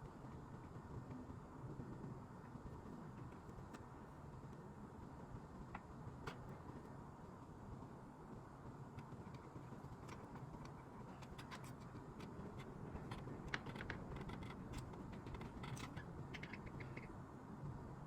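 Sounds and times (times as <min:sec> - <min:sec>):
low steady hum: 0:00.0 - 0:18.0
small handling clicks: 0:09.0 - 0:17.1.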